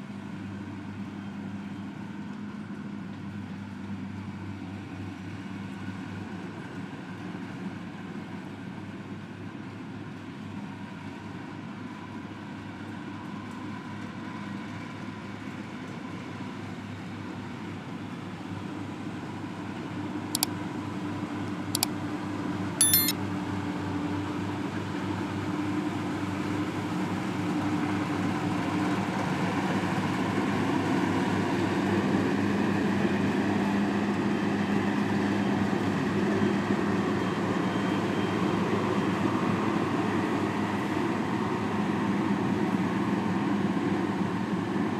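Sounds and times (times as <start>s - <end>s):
short sharp clicks: 22.8s - 23.1s.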